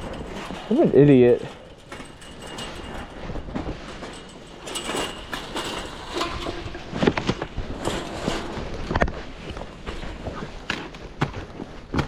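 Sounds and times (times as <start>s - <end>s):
footsteps on icy ground: 6.8s - 12.0s.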